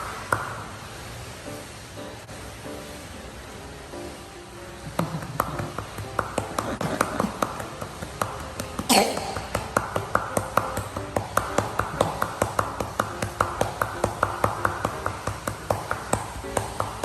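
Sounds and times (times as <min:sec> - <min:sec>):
cupped hand patting chest: 0:05.0 - 0:17.0.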